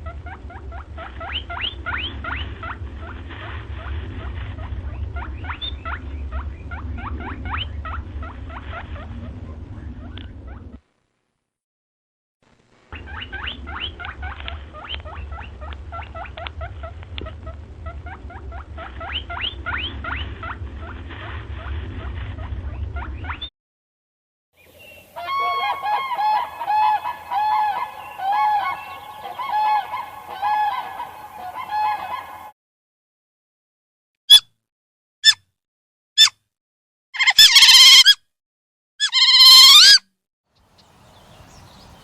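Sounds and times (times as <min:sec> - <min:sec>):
low hum: 0:00.0 - 0:11.1, 0:12.5 - 0:23.4, 0:25.0 - 0:32.5
repeated even-pitched animal calls: 0:25.1 - 0:32.5, 0:36.2 - 0:36.4, 0:37.2 - 0:38.2, 0:39.0 - 0:40.0.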